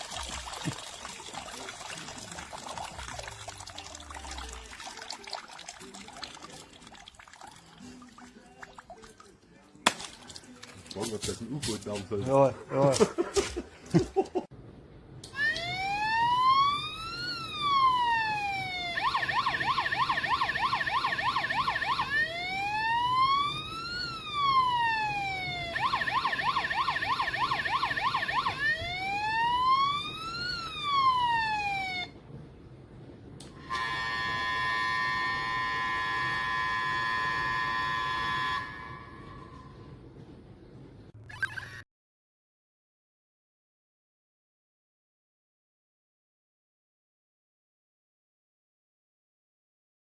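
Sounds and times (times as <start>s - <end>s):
toy electronic siren wailing: 15.3s - 32.1s, 33.5s - 39.8s.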